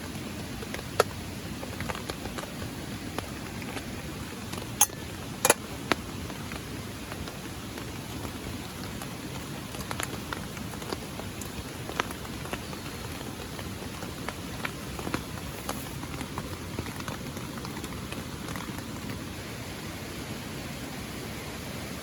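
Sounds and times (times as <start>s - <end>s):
sharp drips nearby: 0.0s - 21.6s
rain hissing: 0.0s - 22.0s.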